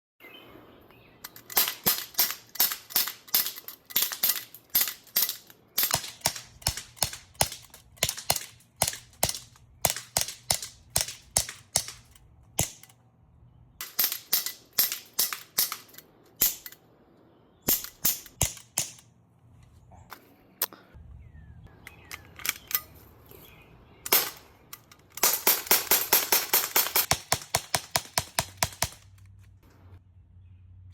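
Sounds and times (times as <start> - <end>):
pistol shots: 5.8 - 12.8.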